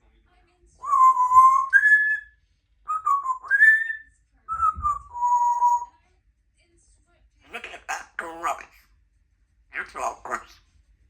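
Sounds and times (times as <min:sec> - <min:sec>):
parrot whistling: 0:00.8 - 0:02.3, 0:02.9 - 0:05.9.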